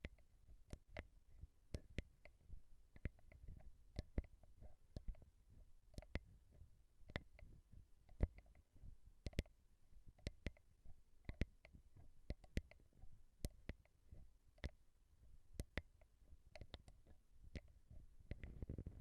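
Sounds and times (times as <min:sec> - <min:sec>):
tapping on a microphone: 0:17.6 - 0:19.0.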